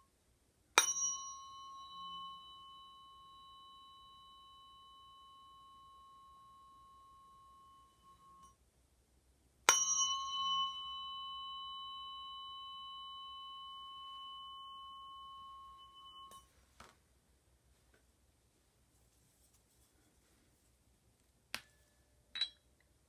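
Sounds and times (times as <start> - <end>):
tuning fork ringing: 0.8 - 8.6, 9.7 - 16.6, 21.7 - 22.7.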